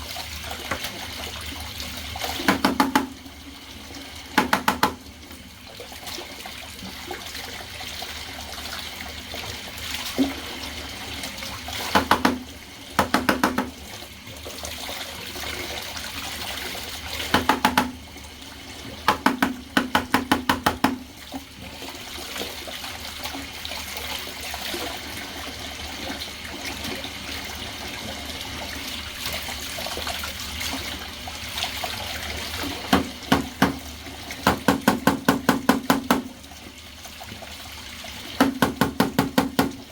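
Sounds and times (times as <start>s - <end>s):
water running from a tap: 0.0s - 39.9s
rapid knocking: 4.4s - 5.0s, 13.0s - 13.8s, 19.1s - 21.0s.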